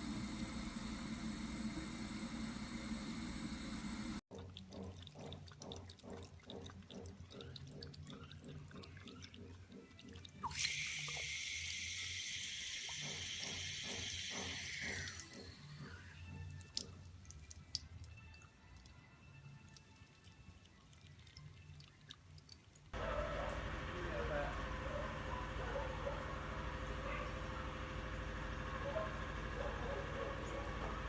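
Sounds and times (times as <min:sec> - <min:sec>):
tap stream hissing: 0:00.0 - 0:04.2, 0:10.4 - 0:17.0
cat lapping water: 0:04.3 - 0:11.8, 0:19.8 - 0:23.6.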